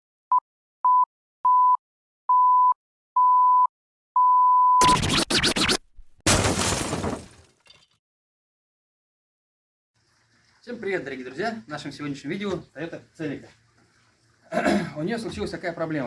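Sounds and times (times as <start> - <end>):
electronic beeps: 4.2 - 5.8
crashing shattering noises: 6.3 - 7.9.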